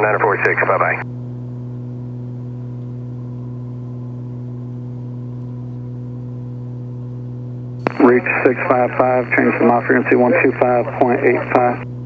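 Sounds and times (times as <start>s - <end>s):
twin piston engines droning: 7.8s - 11.8s.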